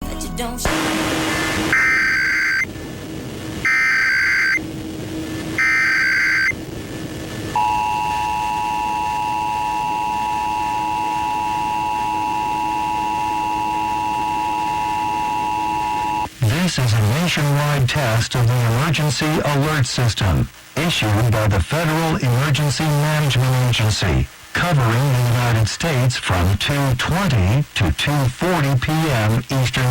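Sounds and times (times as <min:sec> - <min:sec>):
data bursts: 0:00.7 - 0:02.8, 0:03.4 - 0:06.6, 0:07.5 - 0:20.2
two-tone attention signal: 0:01.7 - 0:02.7, 0:05.6 - 0:06.6, 0:07.6 - 0:16.3.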